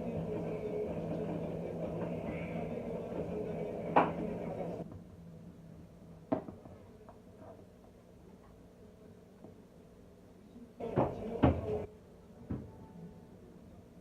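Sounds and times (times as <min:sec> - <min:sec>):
washing machine humming: 0:00.0 - 0:04.8, 0:10.8 - 0:11.9.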